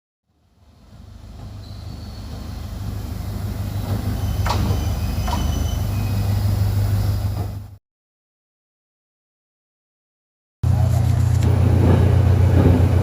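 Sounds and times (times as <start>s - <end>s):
train engine drone: 0.3s - 7.8s, 10.6s - 13.0s
wheel squeal: 1.3s - 7.7s.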